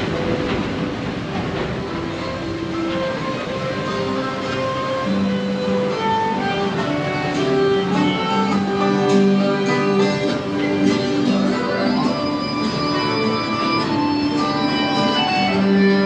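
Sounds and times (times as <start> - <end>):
guitar: 0.0 - 16.0
violin: 0.0 - 16.0.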